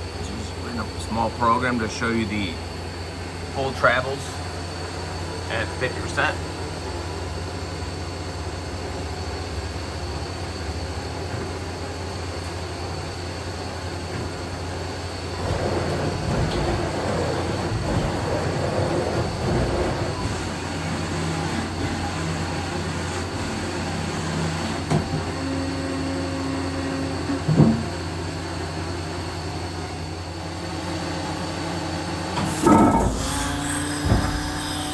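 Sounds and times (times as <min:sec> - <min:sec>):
loud machine clunk: 0:32.4 - 0:34.9
machine hum: 0:32.4 - 0:34.9
machine traversing noise: 0:32.5 - 0:34.9.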